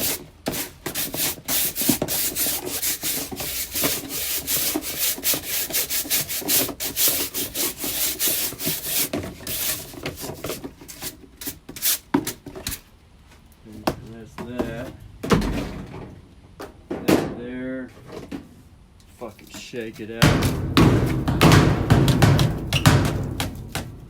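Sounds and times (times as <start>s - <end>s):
rubbing and scraping strokes: 0.0s - 11.2s.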